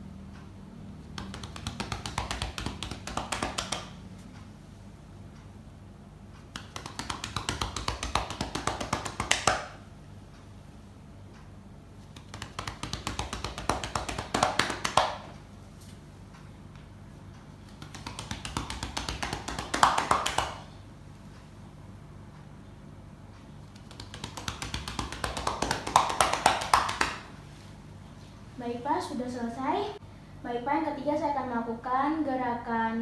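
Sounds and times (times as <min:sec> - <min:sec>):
hands clapping on a back: 0:01.1 - 0:04.0, 0:06.5 - 0:09.8, 0:12.2 - 0:15.4, 0:17.7 - 0:20.8, 0:23.7 - 0:27.4.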